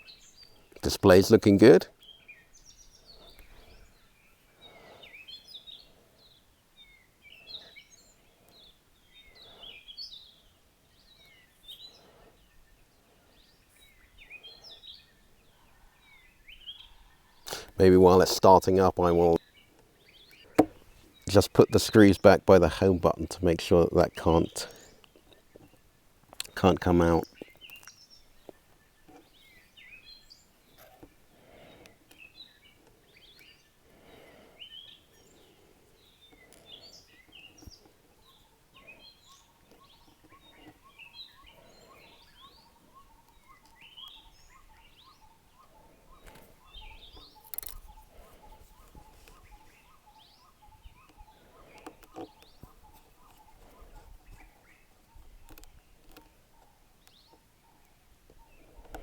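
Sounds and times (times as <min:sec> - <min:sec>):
faint birdsong chirps: 0:00.0 - 0:59.0
soft knocks: 0:20.6 - 0:20.8.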